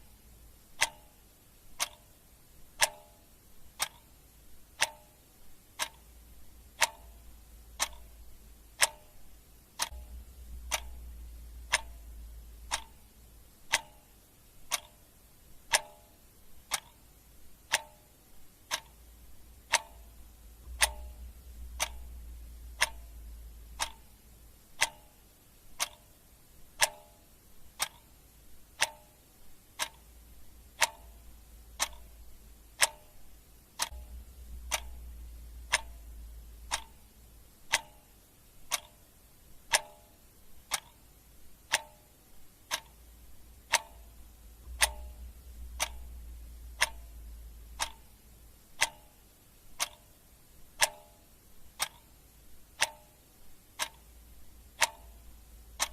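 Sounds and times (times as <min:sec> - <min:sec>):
faint low hum: 0:00.0 - 0:55.9
mechanical clock ticking: 0:00.0 - 0:55.9.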